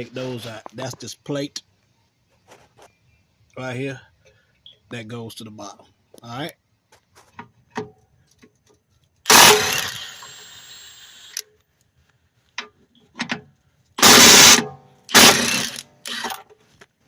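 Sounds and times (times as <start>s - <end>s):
power tool spinning out bolts: 9.3s - 11.4s, 14.0s - 16.5s
clicks and taps of tool and bolts: 12.5s - 13.5s.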